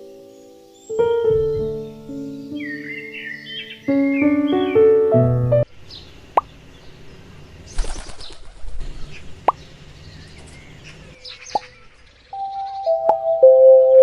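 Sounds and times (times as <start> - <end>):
faint bird chirps: 0.0 - 4.9, 7.7 - 13.4
music: 0.0 - 5.7, 12.4 - 14.0.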